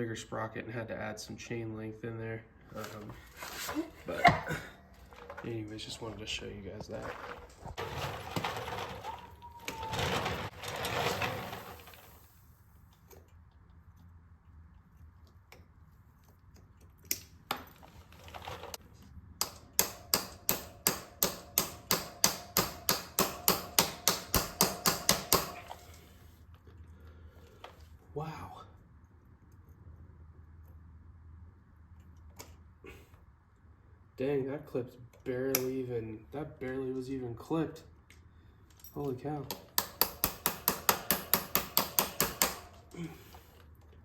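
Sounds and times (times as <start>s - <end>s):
rustling handling noise: 2.7s - 4.2s, 4.8s - 12.9s.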